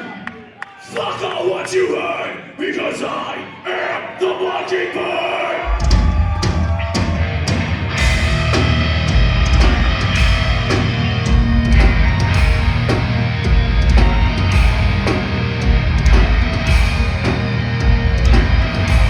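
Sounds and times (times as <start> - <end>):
distorted guitars: 5.7 - 19.0
drum hits: 5.7 - 19.0
heavy metal band playing: 5.7 - 19.0.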